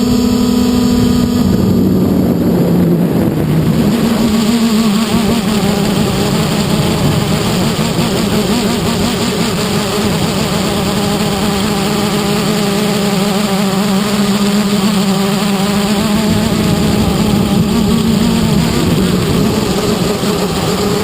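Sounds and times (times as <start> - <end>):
rushing noise: 0.0 - 13.2
quadcopter motors buzzing: 0.0 - 21.0.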